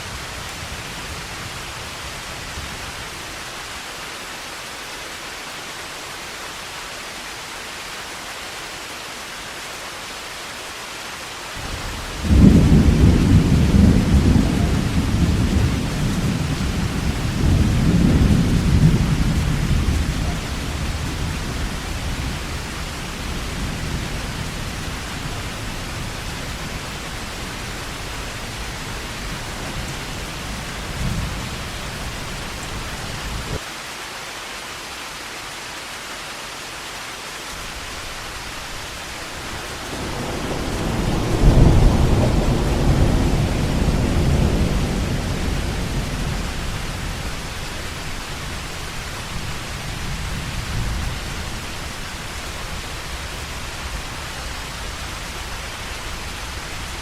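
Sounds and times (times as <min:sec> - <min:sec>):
heavy rain hiss: 0:00.0 - 0:57.0
thunder rumble: 0:11.6 - 0:33.6, 0:38.6 - 0:57.0.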